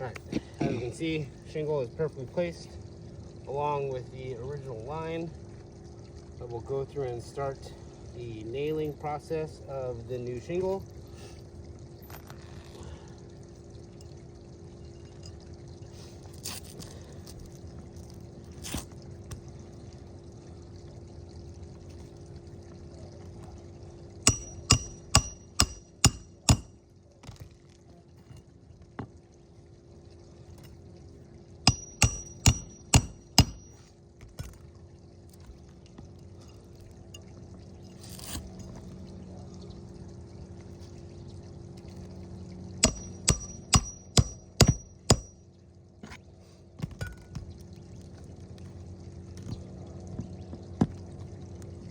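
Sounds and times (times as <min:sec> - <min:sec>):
steady low hum: 0:00.0 - 0:51.9
hammer driving nails into shingle: 0:24.3 - 0:27.4, 0:31.7 - 0:33.8, 0:42.8 - 0:45.3.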